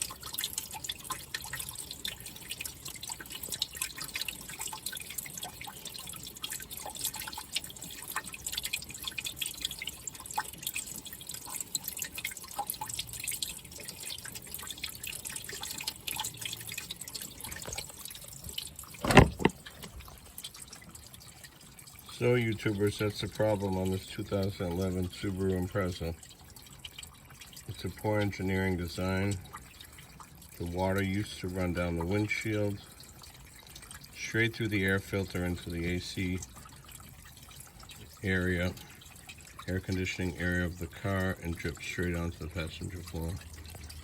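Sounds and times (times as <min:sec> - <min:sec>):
hose water running off a car: 0:00.0 - 0:44.0
water dripping and splashing: 0:00.0 - 0:44.0.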